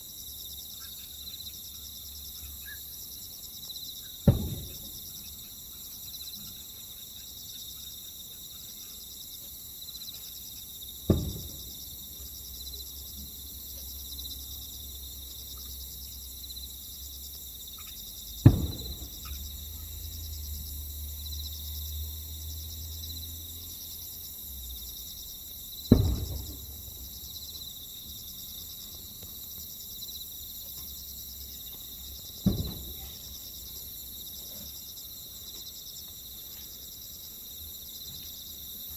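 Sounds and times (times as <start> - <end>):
night insects chirping: 0.0 - 38.9
firework shells booming: 4.2 - 5.3, 11.0 - 12.3, 18.3 - 20.0, 25.9 - 27.6, 32.4 - 33.3.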